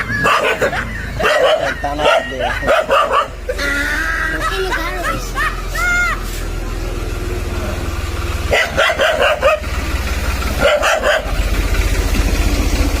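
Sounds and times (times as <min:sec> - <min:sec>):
dog barking: 0:00.0 - 0:03.5, 0:08.5 - 0:09.7, 0:10.6 - 0:11.4
engine idling: 0:00.0 - 0:13.0.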